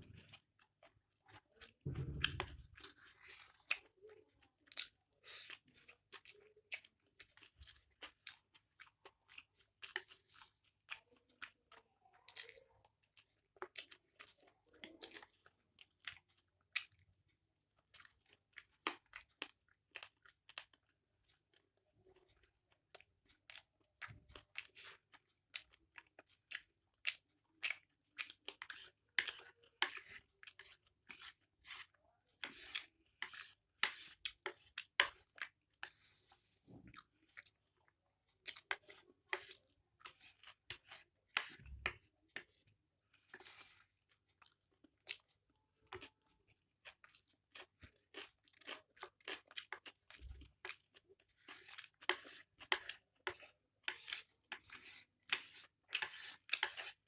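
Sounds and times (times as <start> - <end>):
chewing noodles: 0.0 - 57.0.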